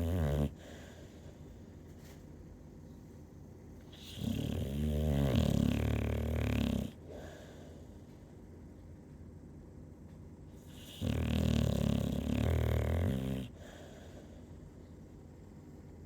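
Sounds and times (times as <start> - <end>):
loud snore: 0.0 - 0.6, 4.0 - 7.0, 10.8 - 13.5
quiet breathing: 0.0 - 2.1, 6.9 - 8.4, 13.4 - 15.0.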